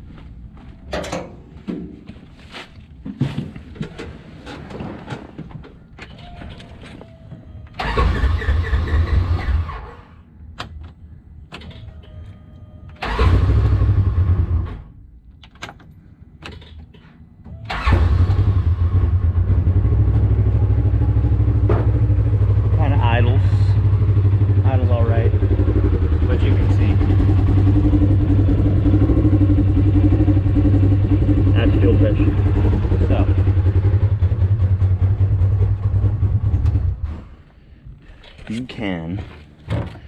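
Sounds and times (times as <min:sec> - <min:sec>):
engine starting and idling: 0:07.8 - 0:10.2, 0:13.0 - 0:14.9, 0:17.7 - 0:37.3.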